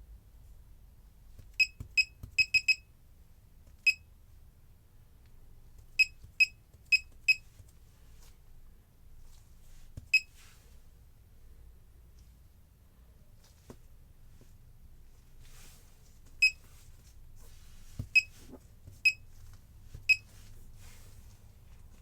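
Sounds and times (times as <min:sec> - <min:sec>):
short high electronic beeps: 0:01.6 - 0:02.8.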